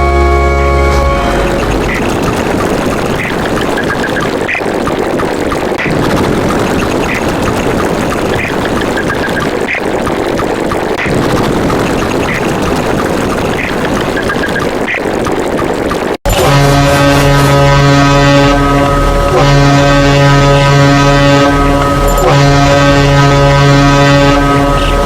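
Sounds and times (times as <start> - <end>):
deep loud horn: 0.0 - 2.1, 16.3 - 25.0
loud dense rumbling: 0.0 - 25.0.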